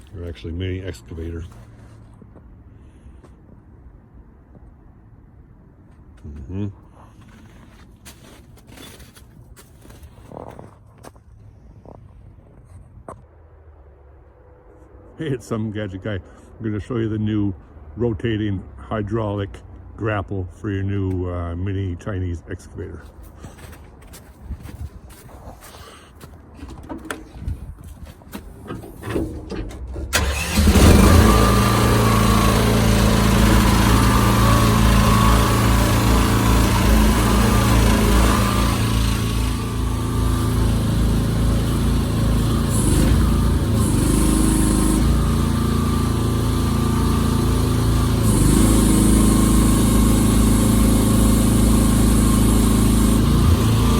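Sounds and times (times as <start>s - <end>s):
small excavator engine: 26.4s - 53.9s.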